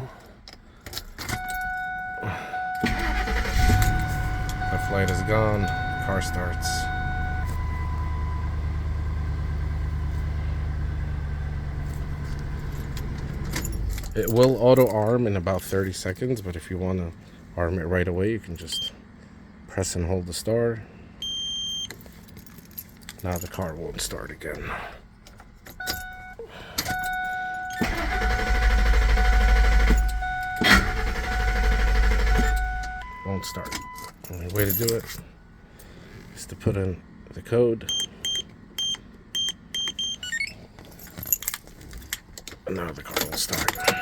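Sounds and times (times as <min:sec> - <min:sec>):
truck engine idling: 0:01.5 - 0:14.8, 0:26.9 - 0:33.1
starter cranking engine: 0:02.8 - 0:06.8, 0:27.8 - 0:32.8
electronic beep tone: 0:03.5 - 0:08.5, 0:43.8 - 0:44.0.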